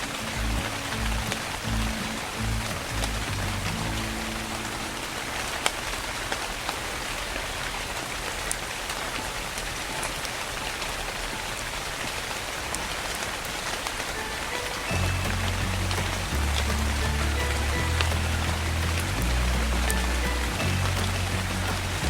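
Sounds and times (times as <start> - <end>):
soft rain falling: 0.0 - 22.0
low held music notes: 14.3 - 22.0.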